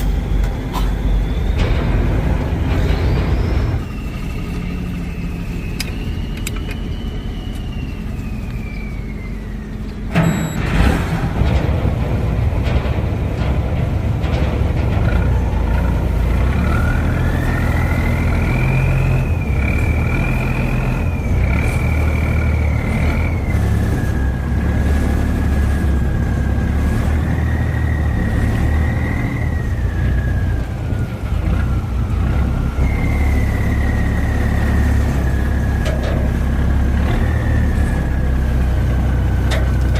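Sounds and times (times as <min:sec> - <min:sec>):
high whine: 0:00.0 - 0:24.5
boat engine running: 0:00.0 - 0:39.9.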